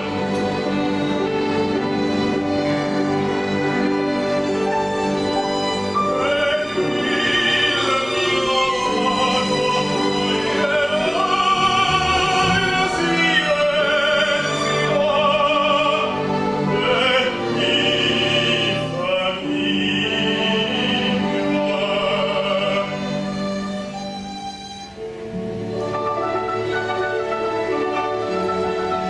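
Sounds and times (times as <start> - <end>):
orchestral accompaniment: 0.0 - 29.0
operatic voice singing: 6.1 - 23.0.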